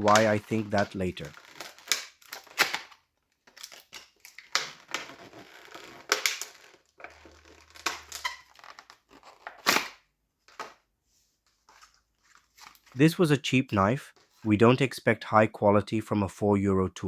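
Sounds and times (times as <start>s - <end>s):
packaging crinkling and rustling: 0.0s - 10.8s, 11.5s - 13.0s.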